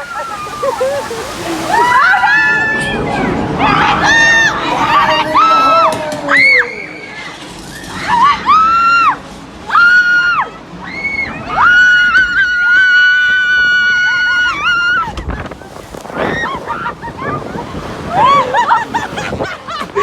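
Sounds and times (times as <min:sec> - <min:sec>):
riders screaming: 0:00.0 - 0:15.3
wind rushing past microphone: 0:13.2 - 0:20.0.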